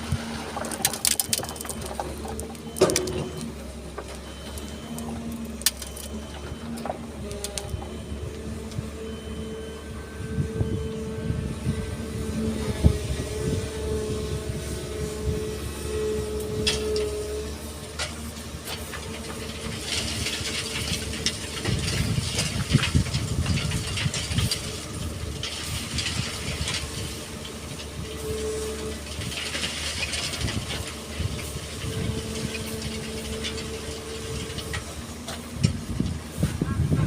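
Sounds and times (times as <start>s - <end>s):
sand and stones rattling: 0.0s - 6.2s
excavator diesel engine whining: 0.0s - 37.0s.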